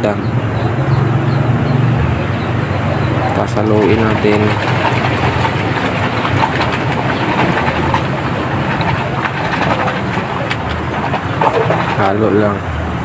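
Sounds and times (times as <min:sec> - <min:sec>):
water splashing into basin: 0:03.0 - 0:12.3.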